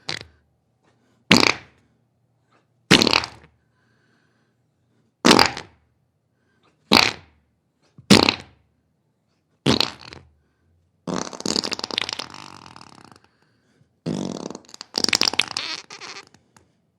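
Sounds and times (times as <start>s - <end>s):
person farting: 0.0s - 0.4s, 1.3s - 1.8s, 2.9s - 3.5s, 5.2s - 5.8s, 6.9s - 7.4s, 8.1s - 8.6s, 9.6s - 10.3s, 11.0s - 13.3s, 14.0s - 16.5s.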